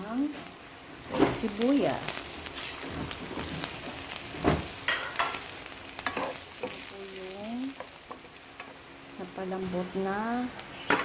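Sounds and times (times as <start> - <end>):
garlic and onion sizzling in oil: 0.0 - 11.0.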